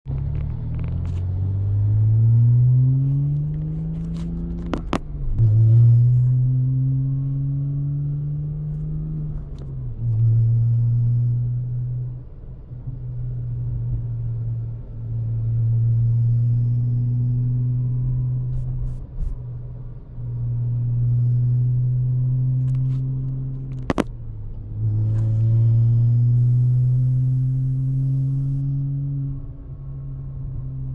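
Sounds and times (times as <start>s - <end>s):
sports car engine droning: 0.1s - 30.9s
sharp clicks: 23.8s - 24.1s.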